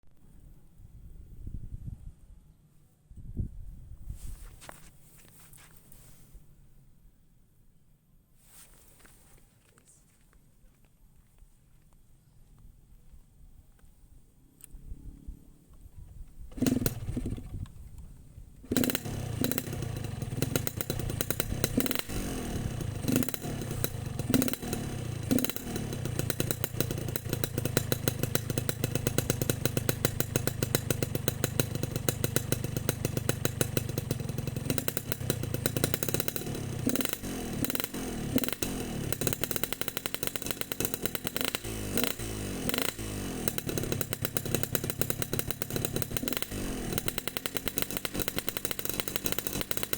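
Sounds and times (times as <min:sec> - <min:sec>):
motorcycle engine popping and revving: 0:16.4 - 0:18.0, 0:18.6 - 0:49.9.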